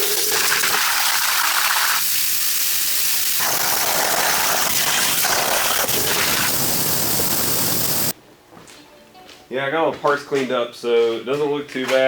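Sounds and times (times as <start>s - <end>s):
plasma cutter hissing: 0.0s - 8.2s.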